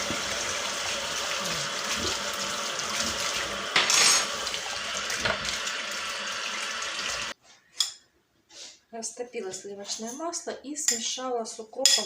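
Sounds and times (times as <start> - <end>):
tap running into a sink: 0.0 - 0.6, 1.8 - 5.7.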